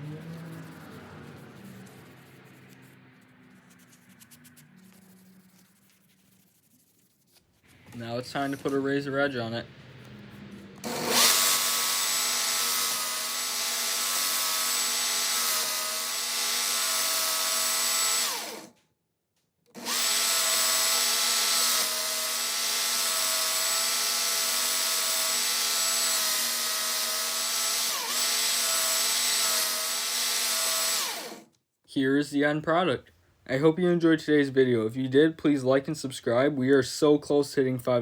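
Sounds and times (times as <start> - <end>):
electric grinder motor running: 10.8 - 18.7, 19.8 - 31.5.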